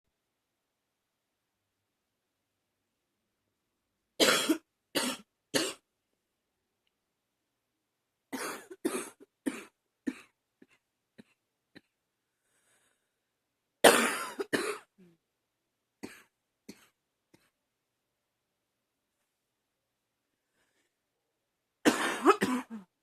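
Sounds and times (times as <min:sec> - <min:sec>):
woman coughing: 0:04.2 - 0:05.8, 0:13.8 - 0:15.0, 0:21.9 - 0:22.9.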